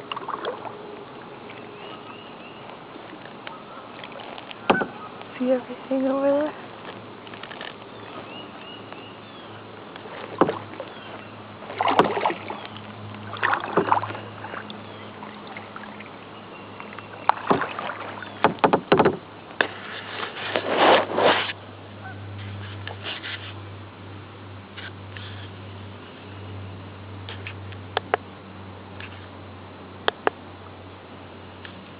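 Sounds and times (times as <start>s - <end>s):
paddle splashing in water: 0.0s - 5.4s, 6.7s - 21.5s
low steady hum: 0.0s - 31.9s.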